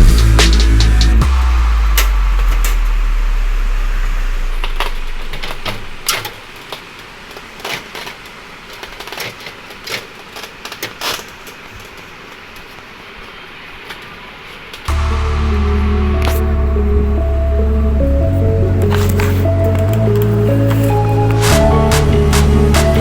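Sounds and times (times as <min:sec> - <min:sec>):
background music: 0:00.0 - 0:04.8, 0:14.9 - 0:23.0.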